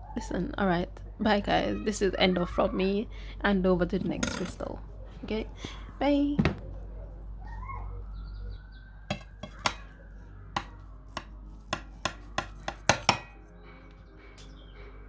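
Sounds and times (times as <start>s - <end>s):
utensils clinking against dishes: 4.0s - 4.8s, 9.1s - 10.0s.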